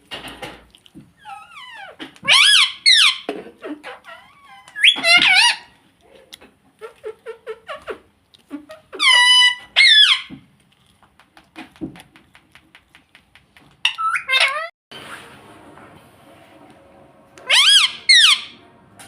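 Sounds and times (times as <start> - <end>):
parrot giving high-pitched calls: 1.2 - 3.3, 4.1 - 5.7, 8.9 - 10.3, 13.9 - 14.7, 17.4 - 18.6.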